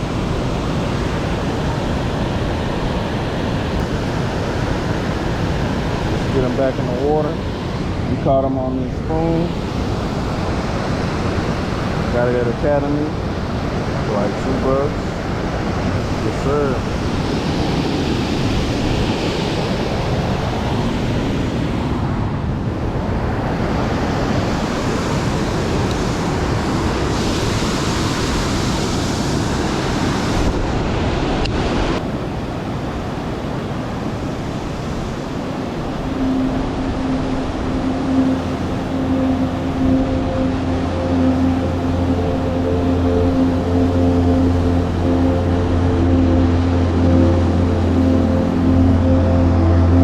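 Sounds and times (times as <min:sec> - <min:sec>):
strong wind buffeting microphone: 0:00.0 - 0:50.0
steady low hum with tones: 0:34.0 - 0:50.0.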